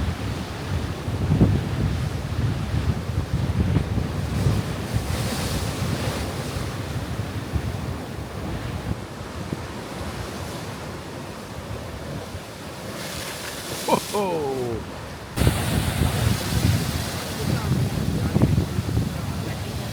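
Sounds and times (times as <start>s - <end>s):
wind rumbling on microphone: 0.0s - 9.6s, 15.4s - 19.9s
surf washing over rocks: 9.0s - 19.9s.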